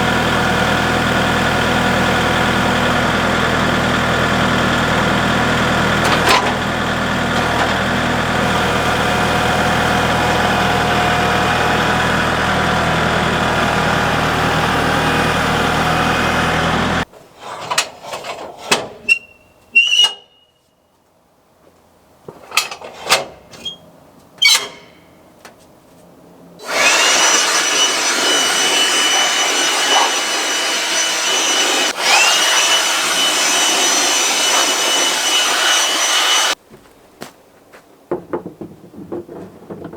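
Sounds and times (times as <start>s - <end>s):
high saw whine: 0.0s - 17.0s, 26.6s - 36.6s
sawmill engine running: 0.0s - 17.1s, 26.6s - 36.6s
knocks and clanks: 5.7s - 12.4s, 38.1s - 39.9s.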